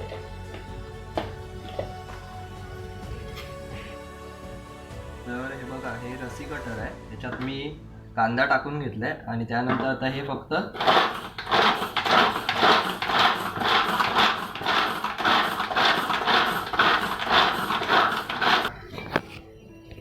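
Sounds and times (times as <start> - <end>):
pull-string chopper spinning: 10.8 - 18.8.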